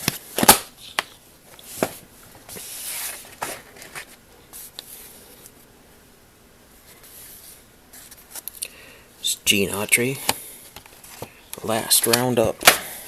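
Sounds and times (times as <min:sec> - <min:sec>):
paper rustling: 0:01.5 - 0:05.6.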